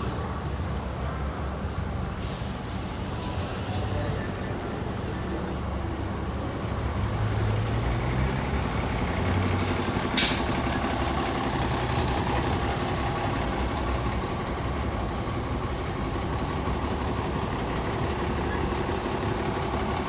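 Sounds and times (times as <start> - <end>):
bus diesel engine running: 0.0 - 20.0
air brakes hiss: 9.6 - 10.7.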